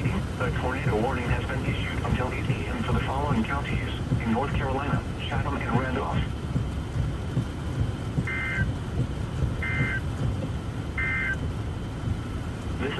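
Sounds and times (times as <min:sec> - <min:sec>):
low rumbling hiss: 0:00.0 - 0:12.9
two-tone digital data bursts: 0:08.2 - 0:08.7, 0:09.6 - 0:10.0.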